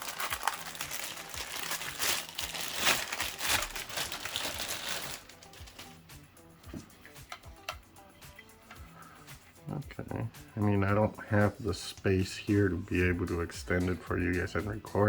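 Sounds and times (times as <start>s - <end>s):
plastic packaging crinkling: 0.0s - 6.0s.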